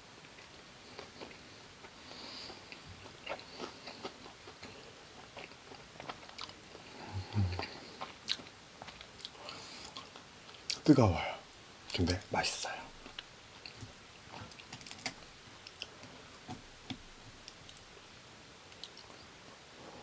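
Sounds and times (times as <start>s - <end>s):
crunchy chewing: 0.2s - 10.8s.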